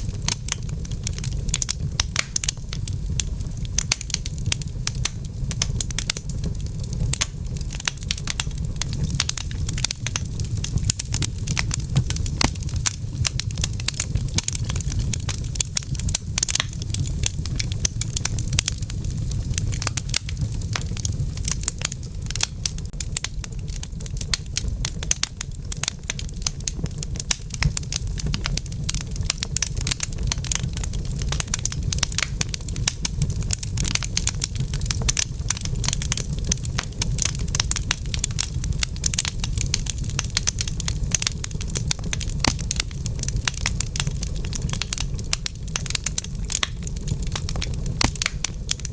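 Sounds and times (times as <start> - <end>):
wood fire crackling: 0.0 - 48.9.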